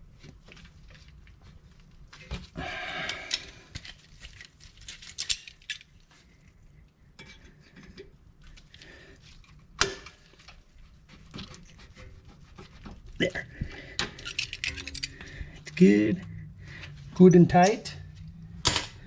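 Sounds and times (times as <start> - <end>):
metal tools clinking and scraping: 14.0 - 15.3, 17.5 - 18.0.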